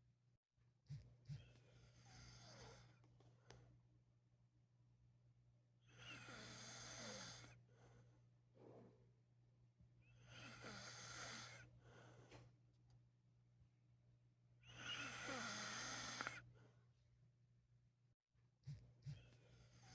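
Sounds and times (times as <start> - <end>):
man snoring: 6.0 - 7.5, 10.3 - 11.6, 14.8 - 16.4.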